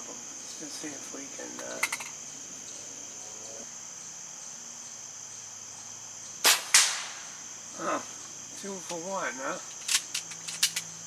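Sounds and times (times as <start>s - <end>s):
crickets chirping: 0.0s - 11.0s
air pistol shot: 6.4s - 7.4s
pellet striking a can: 6.5s - 7.3s.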